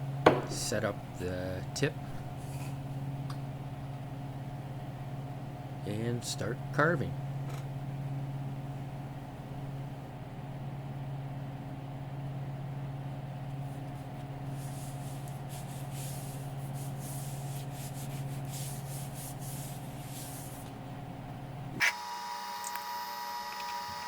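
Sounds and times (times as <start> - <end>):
spindle motor humming: 20.6 - 24.0.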